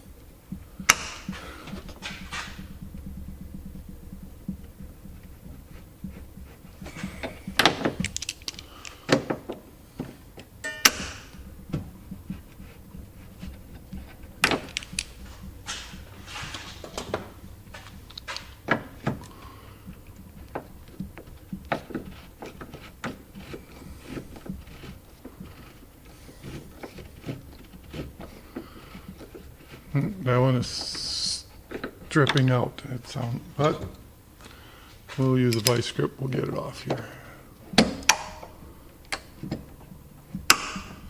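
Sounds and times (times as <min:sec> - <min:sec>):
hand wrench clicking on a nut: 0:06.8 - 0:09.6, 0:13.2 - 0:29.8.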